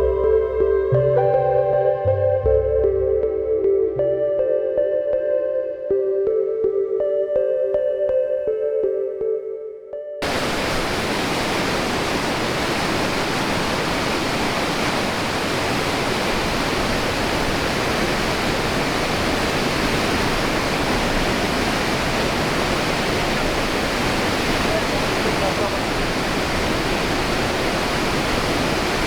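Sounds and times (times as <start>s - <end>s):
waterfall roaring: 10.2s - 29.0s.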